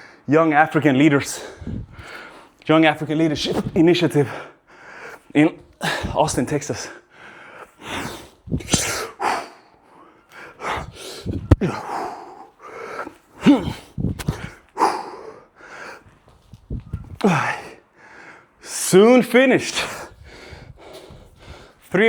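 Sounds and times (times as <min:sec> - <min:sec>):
man breathing hard: 0:00.0 - 0:00.3, 0:01.4 - 0:02.6, 0:04.2 - 0:18.7, 0:19.8 - 0:21.9
man grunting: 0:10.6 - 0:12.5, 0:13.4 - 0:15.4, 0:17.2 - 0:17.8.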